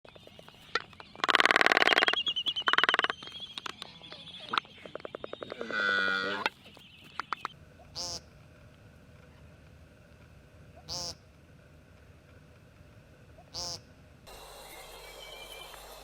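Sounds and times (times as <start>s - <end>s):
bird rattling calls: 0.2s - 3.9s
high bird trill: 0.4s - 6.5s.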